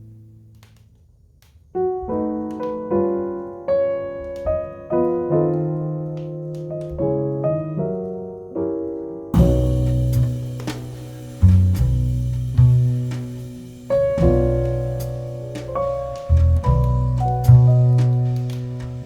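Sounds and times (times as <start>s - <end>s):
slow piano melody: 1.7s - 19.0s
fireplace crackling: 9.4s - 19.0s.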